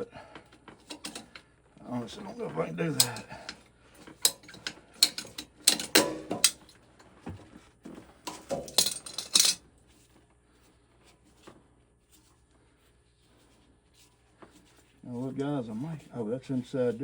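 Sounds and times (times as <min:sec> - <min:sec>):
tools clinking and clattering: 0:00.8 - 0:01.4, 0:02.8 - 0:06.8, 0:08.3 - 0:09.6.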